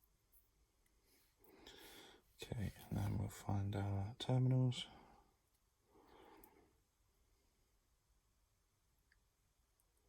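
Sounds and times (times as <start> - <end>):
very faint small ticks: 9.0 - 10.0.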